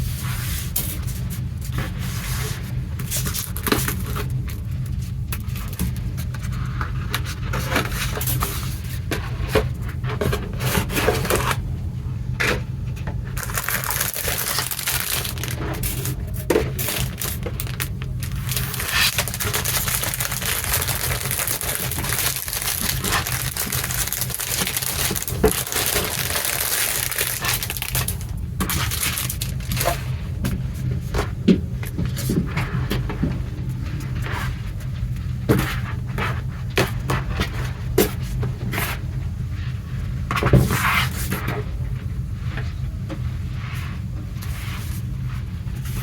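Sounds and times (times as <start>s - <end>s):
steady low hum: 0.0s - 46.0s
plastic packaging crinkling: 13.4s - 30.2s.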